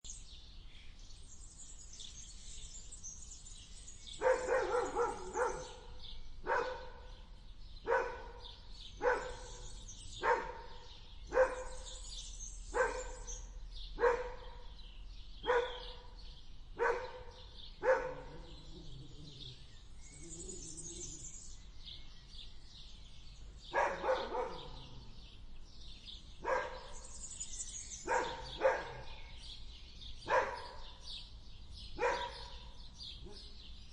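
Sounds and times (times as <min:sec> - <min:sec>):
birds chirping: 0:00.0 - 0:33.9
dog barking: 0:04.2 - 0:07.2, 0:07.8 - 0:12.0, 0:12.7 - 0:13.4, 0:14.0 - 0:14.7, 0:15.4 - 0:16.1, 0:16.8 - 0:19.5, 0:23.7 - 0:25.1, 0:26.4 - 0:27.1, 0:28.0 - 0:29.2, 0:30.2 - 0:31.0, 0:32.0 - 0:33.5
dog growling: 0:18.1 - 0:21.2.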